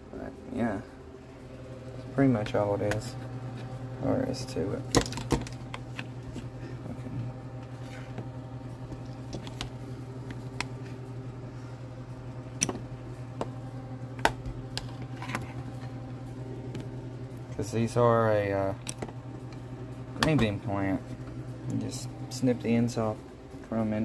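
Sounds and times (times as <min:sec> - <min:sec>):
steady low hum: 0:00.0 - 0:24.0.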